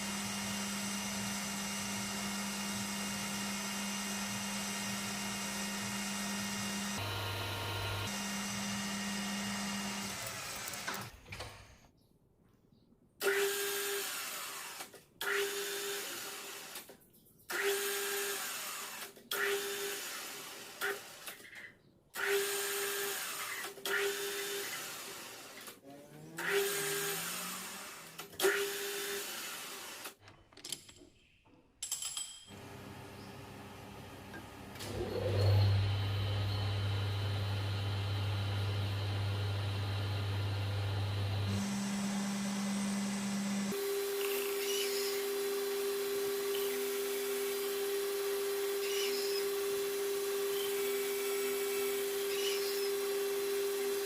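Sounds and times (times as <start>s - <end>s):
power tool whine bursts: 34.2s - 47.8s.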